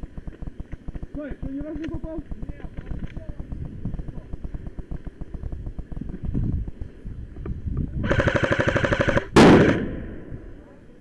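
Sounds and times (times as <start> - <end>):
airsoft gun full-auto burst: 8.0 - 10.1.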